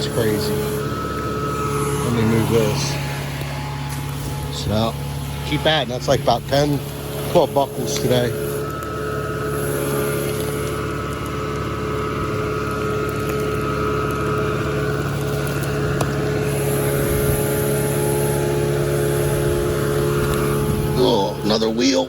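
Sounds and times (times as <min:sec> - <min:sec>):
heavy machine engine droning: 0:00.0 - 0:22.0.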